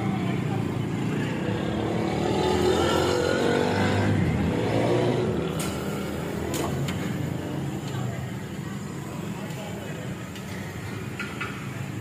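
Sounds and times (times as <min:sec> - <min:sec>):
street noise: 0:00.0 - 0:12.0
vehicle engine passing by: 0:01.0 - 0:06.5.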